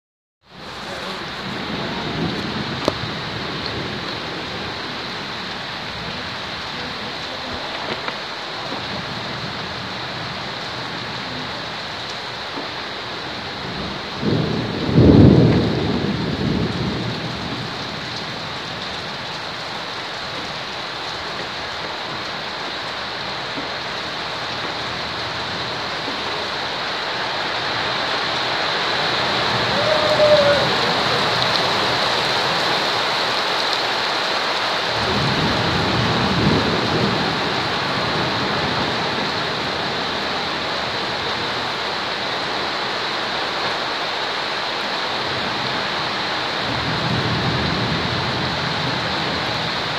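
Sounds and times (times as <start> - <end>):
heavy rain falling: 0.4 - 49.9
low rolls of thunder: 0.6 - 11.8, 13.3 - 20.8, 29.0 - 32.6, 35.0 - 41.6.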